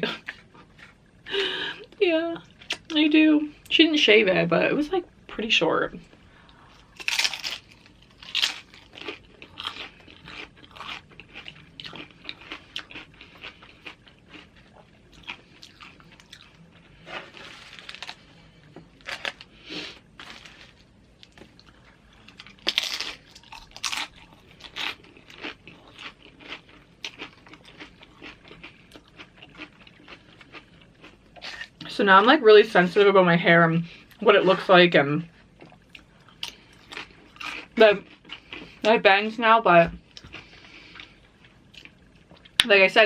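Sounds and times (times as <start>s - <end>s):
crunching and chewing chips: 6.7s - 31.9s, 33.9s - 39.0s, 40.0s - 42.6s.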